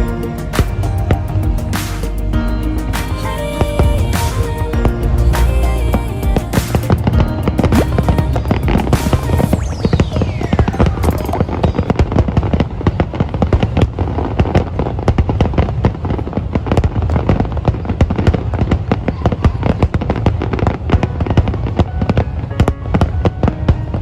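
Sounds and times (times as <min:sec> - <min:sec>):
low rumble: 0:00.0 - 0:12.9
fireworks crackling: 0:02.9 - 0:23.6.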